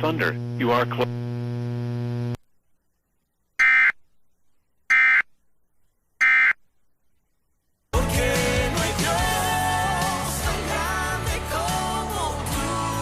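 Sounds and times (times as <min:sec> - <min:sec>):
music: 0:07.9 - 0:13.0.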